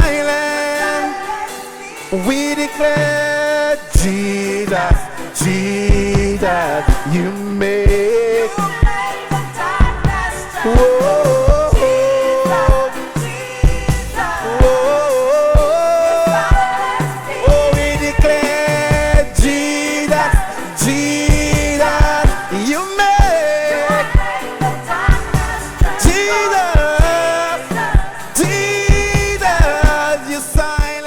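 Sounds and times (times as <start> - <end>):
band playing gospel music: 0.0 - 31.0
gliding vocal lines: 0.0 - 31.0
drum and bass beat: 2.1 - 31.0.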